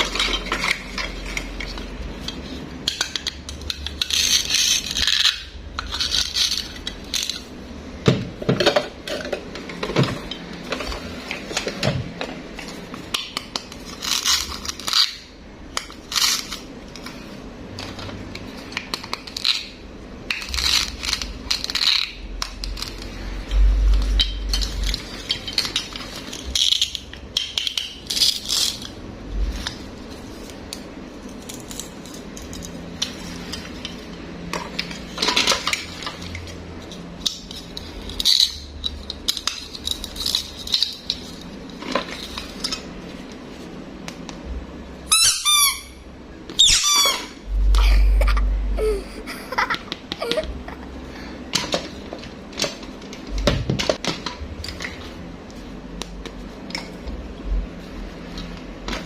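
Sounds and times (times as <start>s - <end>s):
plastic toys clicking and clinking: 0.0s - 42.9s
quick falling squeaky chirps: 46.6s - 47.2s.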